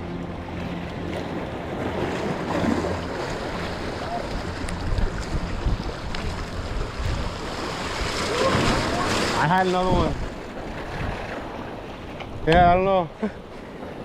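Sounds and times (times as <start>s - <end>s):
surf washing: 0.0s - 14.0s
wind buffeting microphone: 0.0s - 14.0s.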